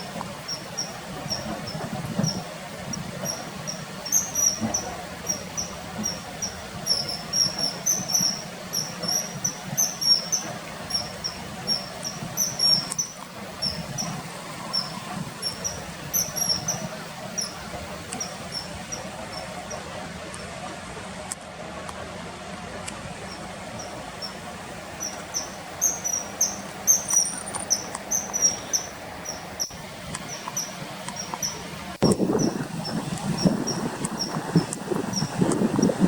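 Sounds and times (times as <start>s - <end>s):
kingfisher chirps: 0.0s - 19.8s, 23.3s - 31.7s.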